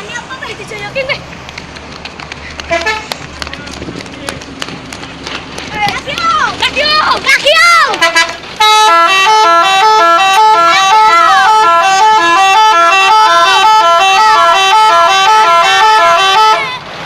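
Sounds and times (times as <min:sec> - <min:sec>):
multi-tone musical bus horn: 0:02.7 - 0:03.1, 0:07.9 - 0:16.8.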